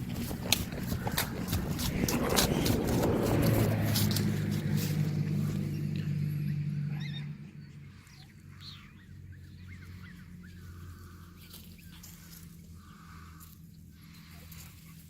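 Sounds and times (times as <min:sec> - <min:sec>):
steady low hum: 0:00.0 - 0:15.0
puppies squeaking: 0:06.9 - 0:07.4.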